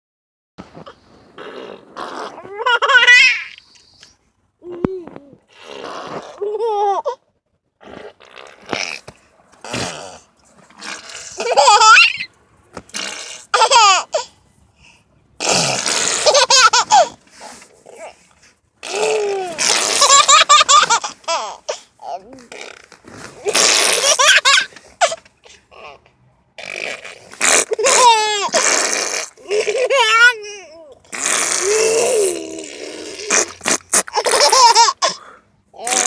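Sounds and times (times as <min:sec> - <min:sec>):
baby laughing: 0:02.2 - 0:03.6, 0:06.2 - 0:07.2, 0:11.3 - 0:12.3, 0:13.5 - 0:14.3, 0:16.0 - 0:17.2, 0:18.9 - 0:22.5, 0:23.4 - 0:25.2, 0:27.4 - 0:28.7, 0:29.4 - 0:31.0, 0:34.0 - 0:35.2.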